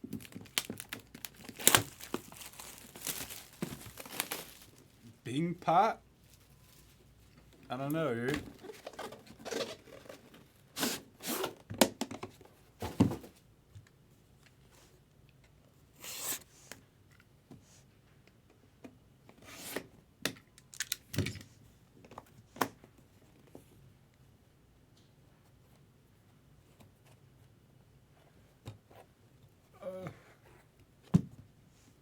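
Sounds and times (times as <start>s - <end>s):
packaging tearing and rustling: 0.1s - 5.0s.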